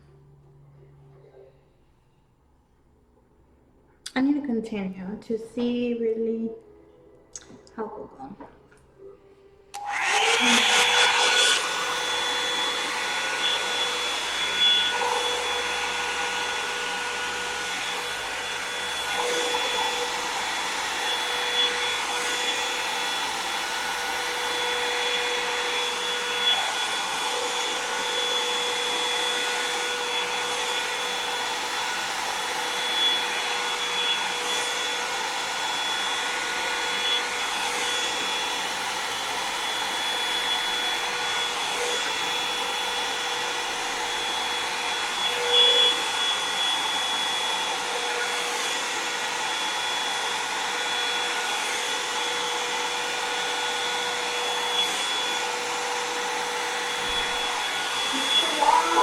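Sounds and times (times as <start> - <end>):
hair dryer fan whining: 8.4 - 59.0.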